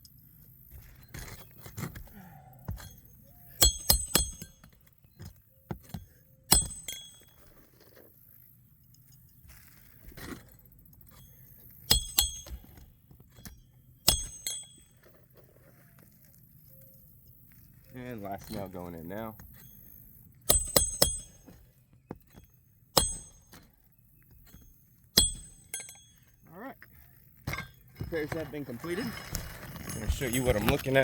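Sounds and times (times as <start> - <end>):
hatchet hammering nails: 3.6 - 7.3, 11.9 - 12.8, 13.4 - 14.8, 20.4 - 23.7, 24.3 - 26.2.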